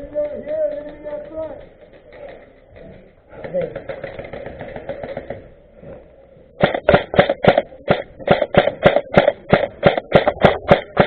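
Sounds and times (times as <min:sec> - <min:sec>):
steady drum beat: 0:06.6 - 0:11.0.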